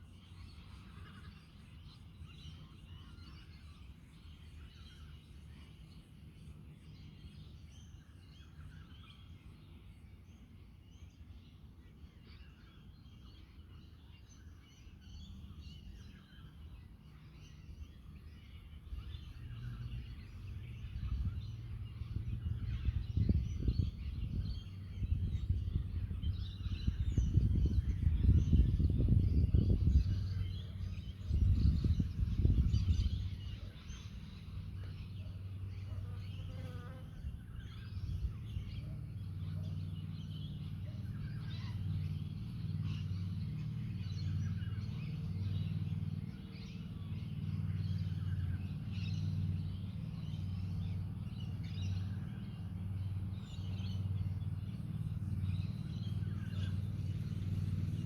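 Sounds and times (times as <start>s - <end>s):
wind gusting on microphone: 20.7s - 33.6s.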